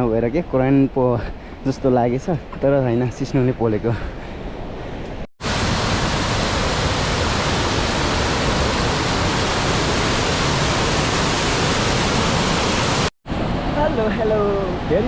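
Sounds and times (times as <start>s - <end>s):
rushing river water: 5.4s - 15.0s.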